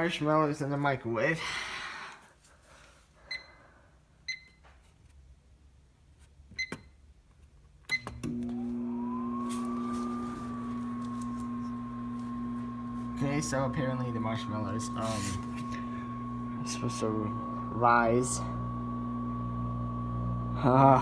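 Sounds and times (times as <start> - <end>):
microwave oven humming: 7.9 - 21.0.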